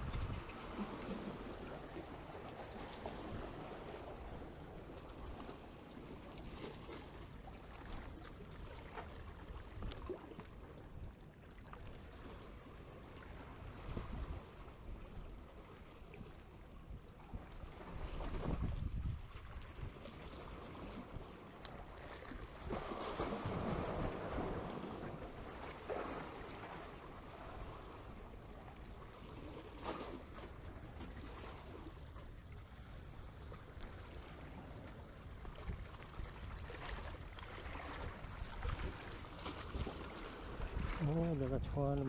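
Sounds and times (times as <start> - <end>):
wind noise on microphone: 0.0 - 0.8, 13.8 - 14.4, 17.9 - 20.0.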